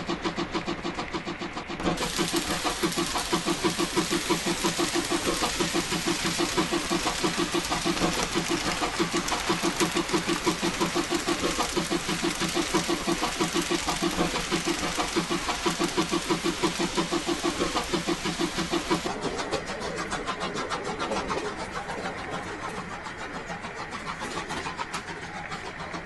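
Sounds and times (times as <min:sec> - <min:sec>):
steam hiss: 0:00.0 - 0:26.0
steam locomotive exhaust chuffing: 0:00.0 - 0:26.0.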